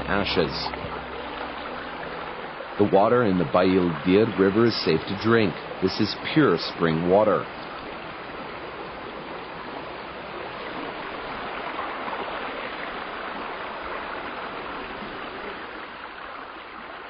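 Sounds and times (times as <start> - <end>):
river flowing: 0.0 - 17.0.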